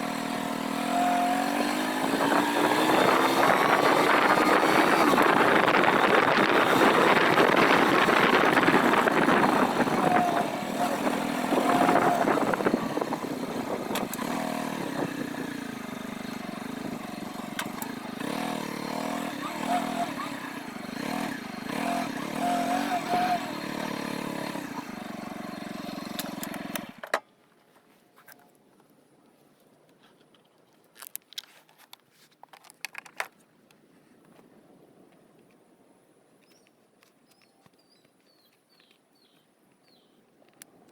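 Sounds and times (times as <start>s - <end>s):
engine running wavering pitch: 0.0s - 27.0s.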